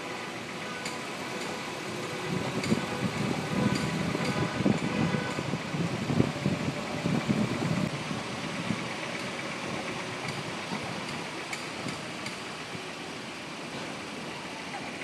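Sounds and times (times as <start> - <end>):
sharp clicks from car front end: 10.2 - 12.5.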